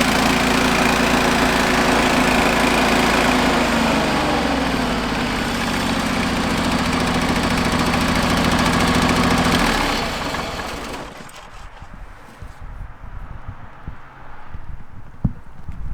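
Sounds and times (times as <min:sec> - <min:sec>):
garden tractor engine running: 0:00.0 - 0:12.6.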